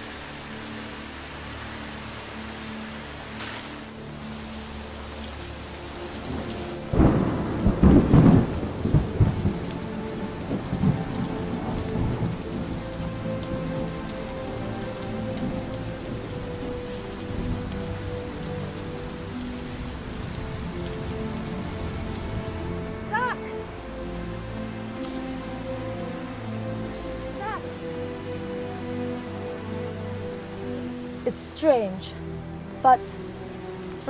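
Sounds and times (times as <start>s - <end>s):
steady rain falling: 0.0s - 34.0s
thunder clap and rumble: 6.3s - 12.8s.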